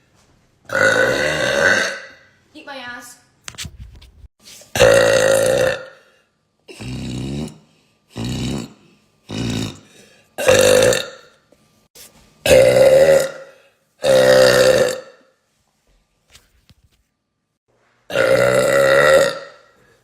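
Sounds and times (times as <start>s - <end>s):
woman burping: 0.7s - 2.3s, 4.8s - 6.0s, 10.4s - 11.3s, 12.5s - 15.3s, 18.1s - 19.7s.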